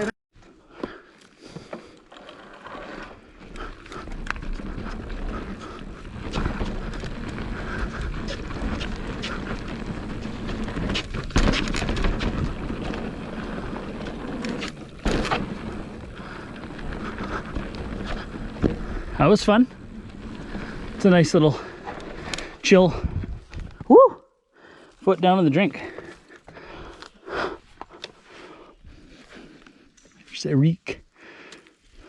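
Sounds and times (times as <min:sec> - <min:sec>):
bike rattling and knocking: 0:00.7 - 0:23.9
tyres rolling over dirt and rock: 0:00.7 - 0:23.9
wind on microphone: 0:23.0 - 0:23.8.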